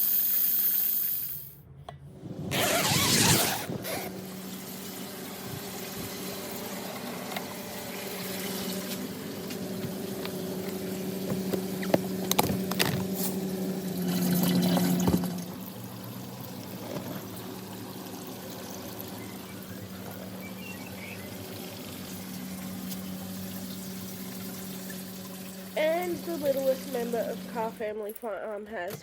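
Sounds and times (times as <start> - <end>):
steady hum: 1.7 - 28.0
water pouring into a container: 10.0 - 27.7.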